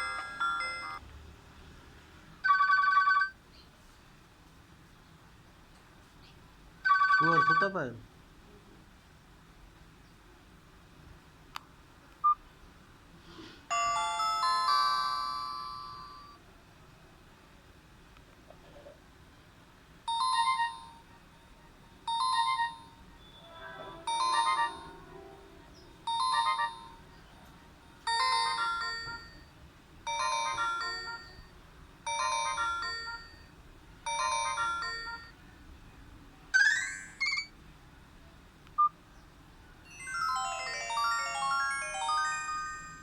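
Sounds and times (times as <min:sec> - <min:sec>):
electronic phone ringtone: 0:00.0 - 0:01.0, 0:02.4 - 0:03.4, 0:06.8 - 0:07.8, 0:13.7 - 0:16.4, 0:20.1 - 0:21.3, 0:22.0 - 0:25.1, 0:26.0 - 0:27.3, 0:28.1 - 0:35.4, 0:36.6 - 0:37.5, 0:39.9 - 0:43.0.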